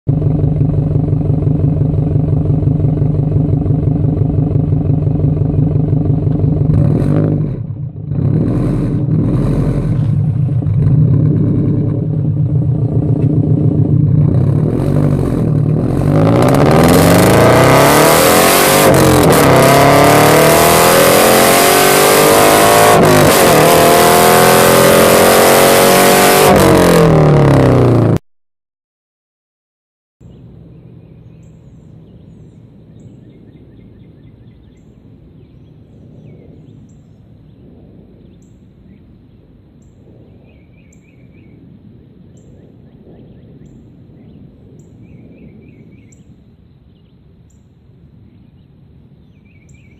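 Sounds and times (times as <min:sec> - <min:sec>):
car engine revving: 0:00.1 - 0:28.2.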